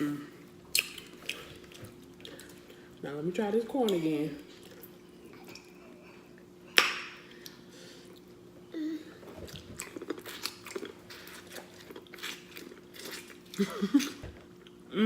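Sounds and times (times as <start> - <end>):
wet chewing and lip-smacking: 0.7 - 2.8, 9.4 - 14.8.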